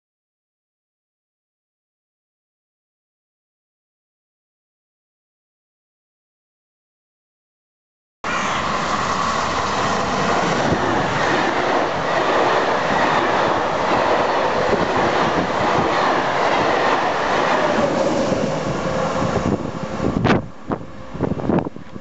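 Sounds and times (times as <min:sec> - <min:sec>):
train rolling on track: 0:08.2 - 0:22.0.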